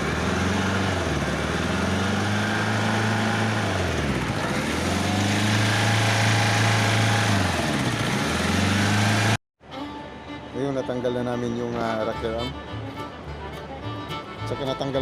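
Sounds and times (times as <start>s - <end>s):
diesel forklift engine running: 0.0s - 9.4s.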